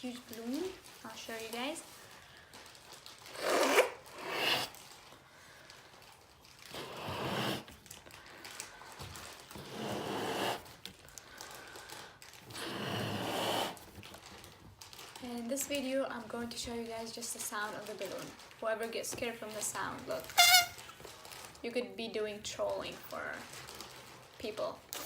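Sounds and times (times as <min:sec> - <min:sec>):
person blowing up balloon: 0:03.3 - 0:04.8, 0:06.7 - 0:07.8, 0:09.5 - 0:10.8, 0:12.5 - 0:13.9, 0:20.3 - 0:20.9.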